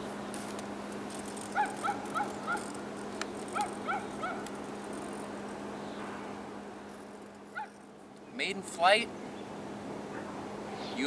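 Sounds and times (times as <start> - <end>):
steady low hum: 0.0 - 11.0
dog yipping: 1.6 - 2.7, 3.5 - 4.4, 7.5 - 7.8.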